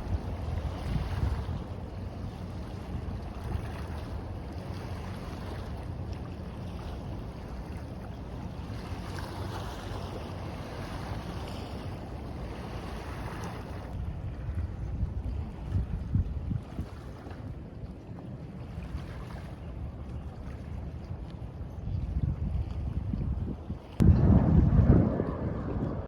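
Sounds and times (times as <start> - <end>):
waves washing onto beach: 0.0 - 14.6
wind buffeting microphone: 0.0 - 17.8, 18.7 - 26.0.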